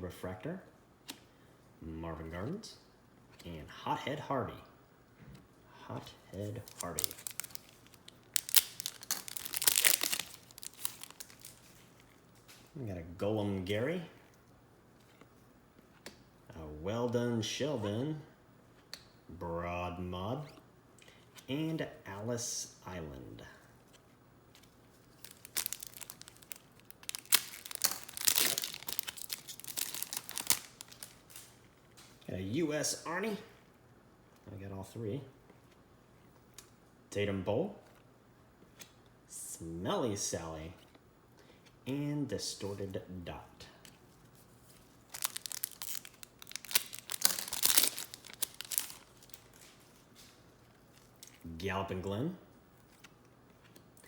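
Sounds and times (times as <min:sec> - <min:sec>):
card pack wrapper tearing: 0:06.6 - 0:11.8, 0:25.2 - 0:31.6, 0:45.1 - 0:49.8.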